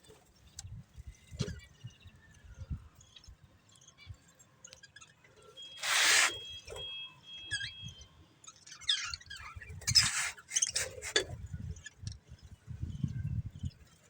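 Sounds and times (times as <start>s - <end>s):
budgerigars chirping: 5.8s - 6.3s, 8.8s - 11.2s
harsh screech: 5.8s - 6.4s, 9.9s - 11.1s
scratchy squawks: 5.8s - 6.4s, 9.8s - 11.3s
thin whistled notes: 5.8s - 6.5s.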